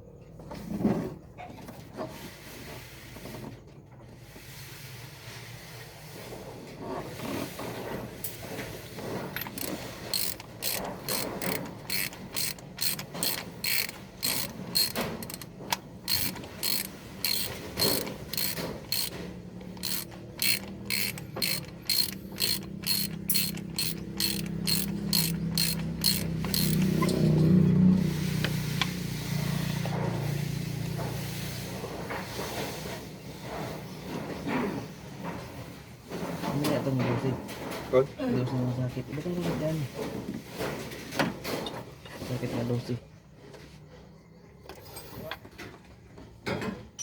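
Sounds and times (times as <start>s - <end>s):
socket ratchet clicking: 9.4s - 27.2s.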